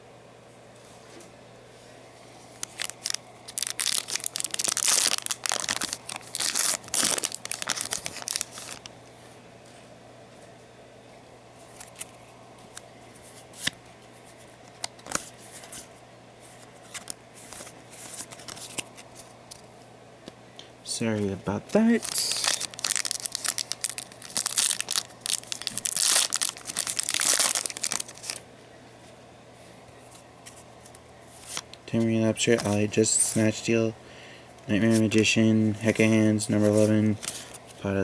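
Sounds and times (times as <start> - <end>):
steady low hum: 0.0 - 38.0
foil packs tearing and crinkling: 2.6 - 8.9, 21.8 - 28.4.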